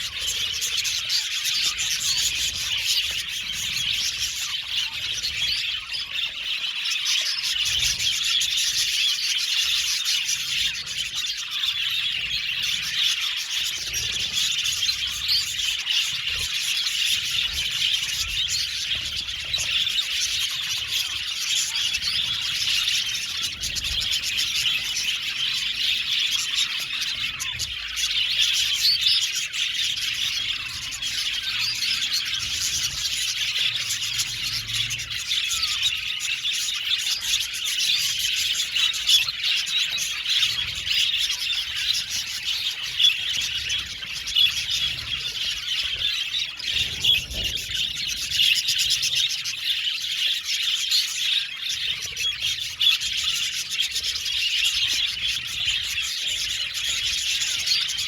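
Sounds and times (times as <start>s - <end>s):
budgies chattering and chirping: 0.0s - 58.0s.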